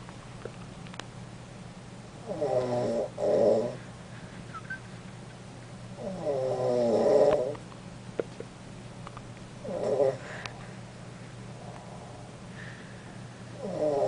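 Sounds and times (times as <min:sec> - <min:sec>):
cat snoring: 0:02.2 - 0:03.8, 0:06.0 - 0:07.6, 0:09.6 - 0:10.3, 0:13.6 - 0:14.0.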